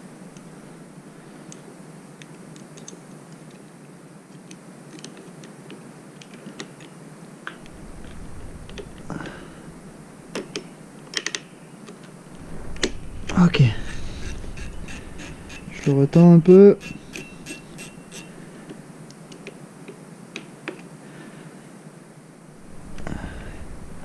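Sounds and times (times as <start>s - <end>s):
tools and metal parts clicking: 14.6s - 18.4s.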